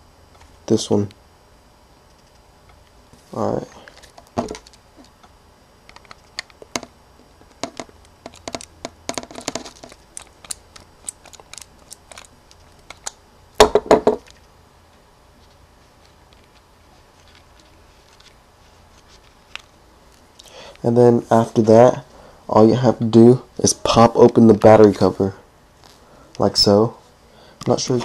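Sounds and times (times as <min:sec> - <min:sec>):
knocks on camera body: 0:13.6 - 0:14.2.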